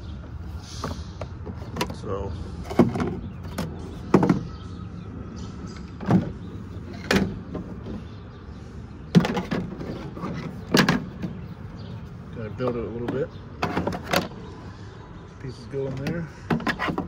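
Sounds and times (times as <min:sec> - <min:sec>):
plastic case knocks and clunks: 0:02.7 - 0:04.5, 0:09.1 - 0:11.4.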